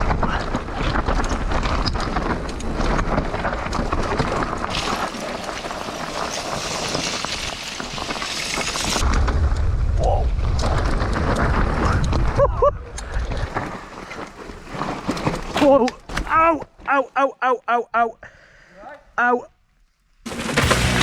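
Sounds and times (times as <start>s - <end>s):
bike rattling over dirt: 0.0s - 16.2s, 20.3s - 21.0s
wind buffeting microphone: 9.0s - 13.6s.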